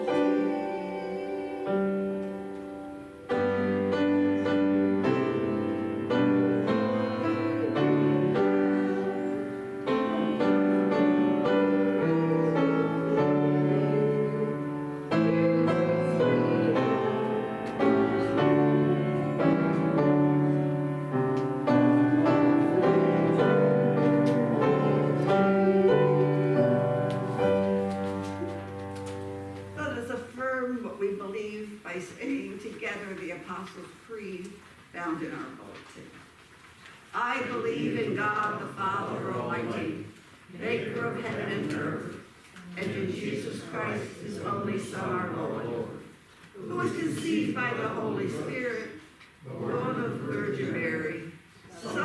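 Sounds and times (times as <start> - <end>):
solo piano piece: 0.0 - 29.8.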